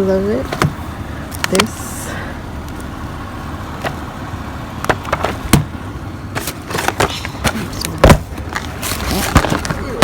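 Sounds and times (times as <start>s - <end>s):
rummaging clatters and rustles: 6.4s - 10.0s.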